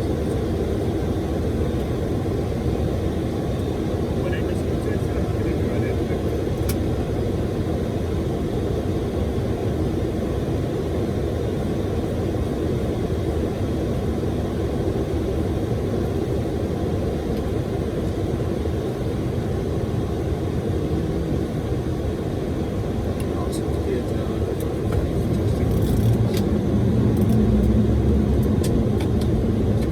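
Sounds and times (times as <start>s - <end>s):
airflow and engines rushing: 0.0s - 29.9s.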